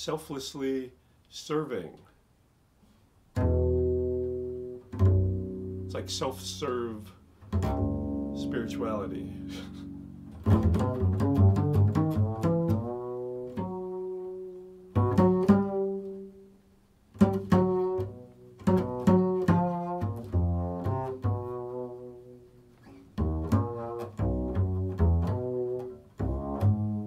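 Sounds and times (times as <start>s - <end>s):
plucked low stringed instrument: 3.3s - 27.0s.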